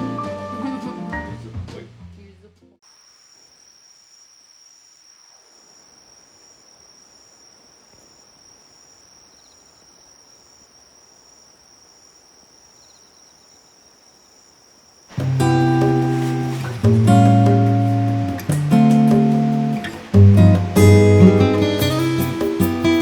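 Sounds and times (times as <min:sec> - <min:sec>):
acoustic guitar music: 0:00.0 - 0:01.5, 0:15.1 - 0:23.0
insect calling in short pulses: 0:02.8 - 0:20.2
insect high-pitched trill: 0:02.8 - 0:23.0.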